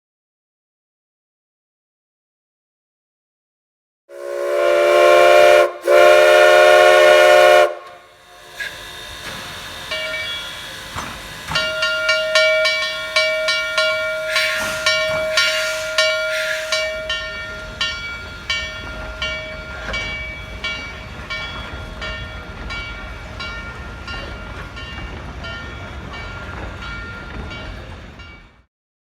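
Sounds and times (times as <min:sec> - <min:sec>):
steam hissing: 0:04.1 - 0:24.8
train rolling rumble: 0:04.1 - 0:28.7
steam locomotive bell ringing: 0:04.2 - 0:28.7.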